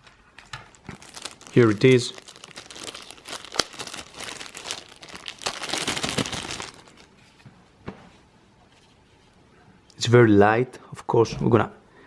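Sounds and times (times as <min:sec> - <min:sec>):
plastic packaging crinkling: 0:00.5 - 0:07.2.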